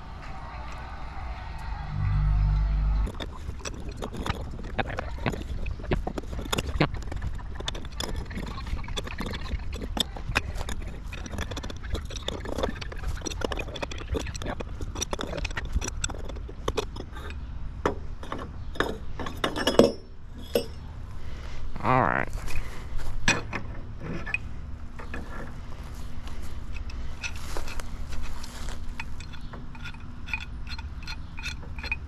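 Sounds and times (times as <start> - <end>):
low rumble: 0.0 - 6.6
metal clicks and knocks: 3.0 - 20.8, 26.7 - 32.0.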